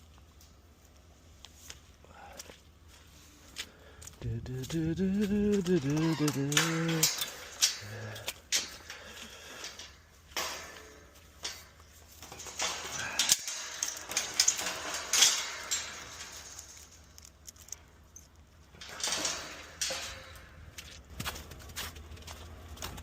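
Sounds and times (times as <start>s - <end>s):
clinks and knocks: 4.2s - 21.6s.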